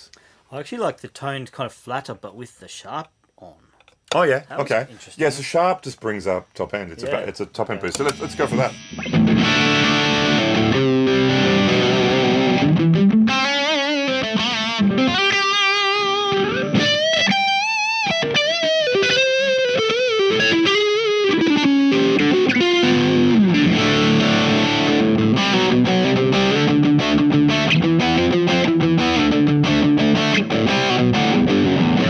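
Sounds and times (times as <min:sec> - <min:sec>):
distorted electric guitar: 0:07.9 - 0:32.0.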